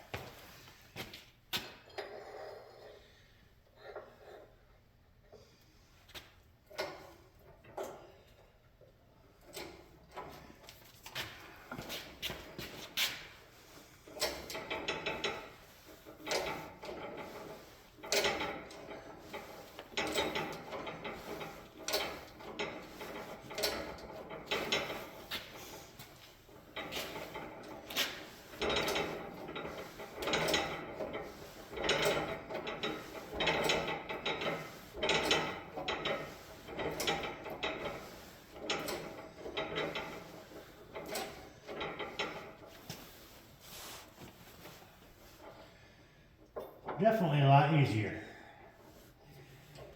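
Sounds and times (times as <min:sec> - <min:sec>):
hydraulic press clicking and creaking: 0:06.6 - 0:08.4, 0:09.3 - 0:43.6.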